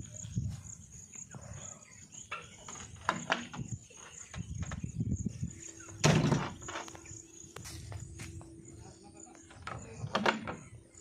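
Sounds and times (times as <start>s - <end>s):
insects chirping: 0.0s - 11.0s
thump: 6.0s - 6.7s.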